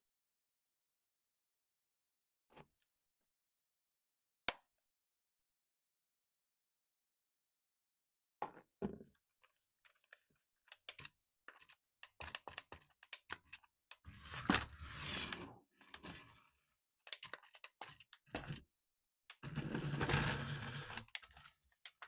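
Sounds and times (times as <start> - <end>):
small clicks and taps: 9.4 - 14.0.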